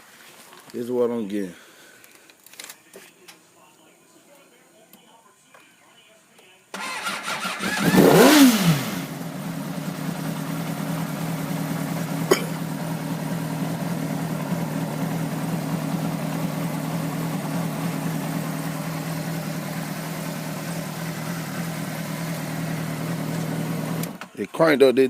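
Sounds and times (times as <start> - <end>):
motorcycle engine idling: 6.8 - 24.2.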